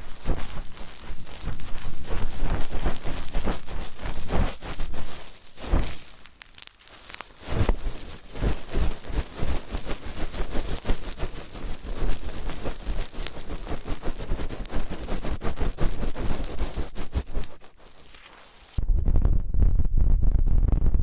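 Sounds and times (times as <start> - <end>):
hands rubbing microphone: 0.0 - 18.8
muffled low thumps: 18.8 - 21.0.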